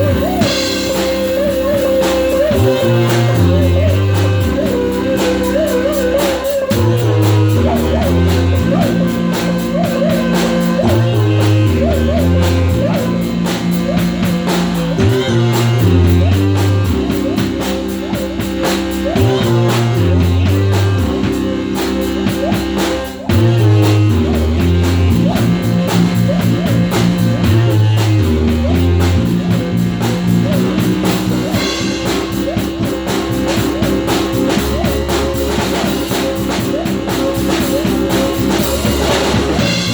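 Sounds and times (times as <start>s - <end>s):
rock music: 0.0s - 39.9s.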